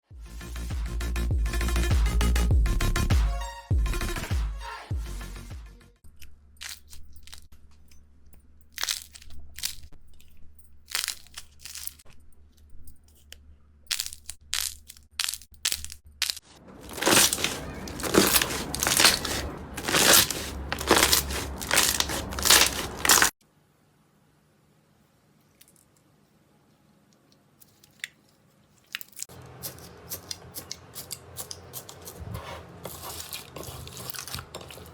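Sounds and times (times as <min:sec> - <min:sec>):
slime crackling when squeezed: 0:16.3 - 0:23.3.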